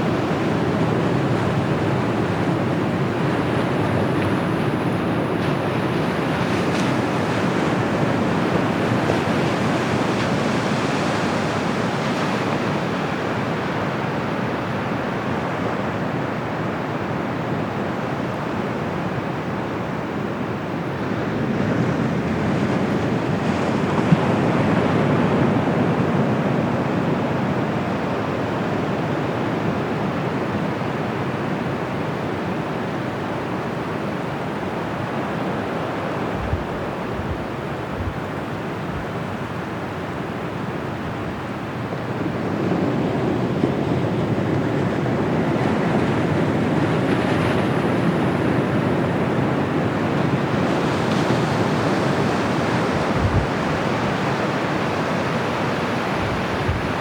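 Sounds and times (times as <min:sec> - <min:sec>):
surf washing onto beach: 0:34.1 - 0:57.0.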